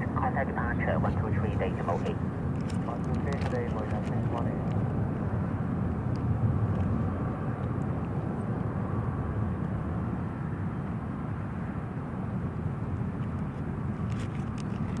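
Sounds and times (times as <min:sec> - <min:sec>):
distant jet engines rumbling: 0:00.0 - 0:09.8.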